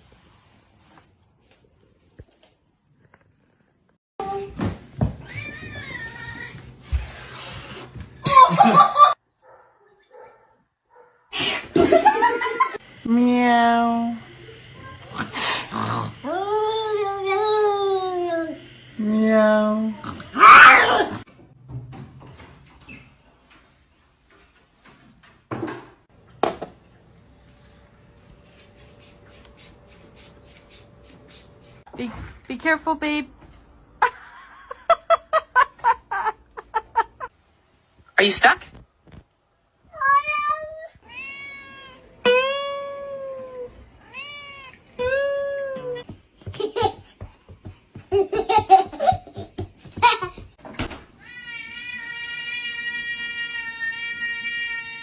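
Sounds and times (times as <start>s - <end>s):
cat meowing: 40.0s - 44.8s.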